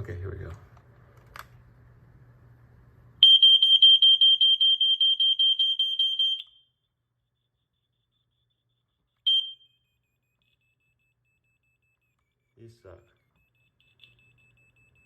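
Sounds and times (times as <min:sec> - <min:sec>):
smoke detector alarm pulsing: 0:03.2 - 0:15.0.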